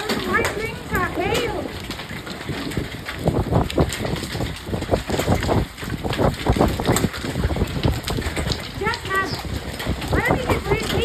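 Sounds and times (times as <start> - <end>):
hailstones pelting down: 0.0 - 11.0
wind noise: 0.0 - 11.0.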